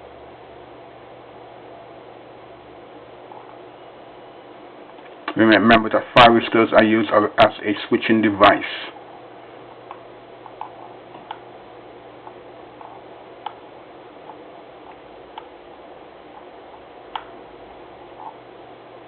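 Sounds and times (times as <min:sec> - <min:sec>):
steady background hum: 0:00.0 - 0:19.0.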